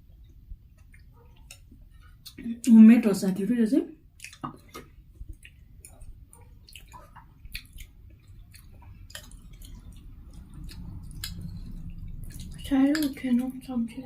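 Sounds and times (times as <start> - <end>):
wet mouth clicks while chewing: 0.7 - 2.5, 4.2 - 13.3.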